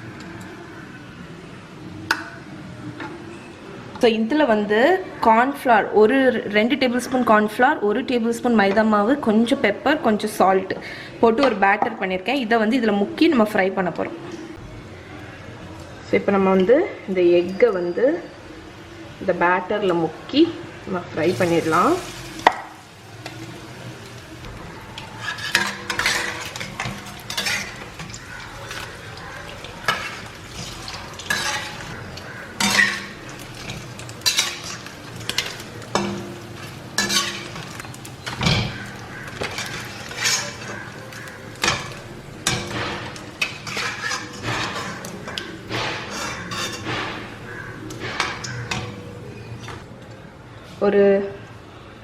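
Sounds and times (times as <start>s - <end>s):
food sizzling in hot oil: 21.2s - 48.9s
metal utensil clinking on pan: 25.2s - 49.0s.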